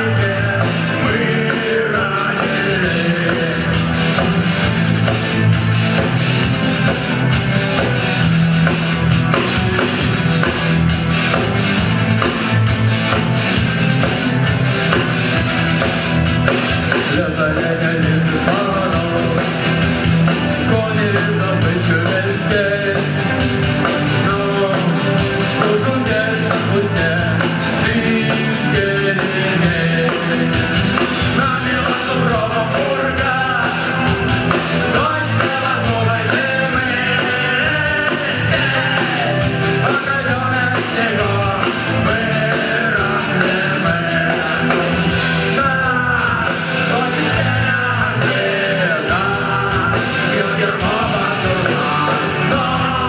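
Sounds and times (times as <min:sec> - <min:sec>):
person singing: 0:00.0 - 0:04.7, 0:16.9 - 0:53.0
drums beating: 0:00.0 - 0:53.0
electric guitar: 0:00.0 - 0:53.0.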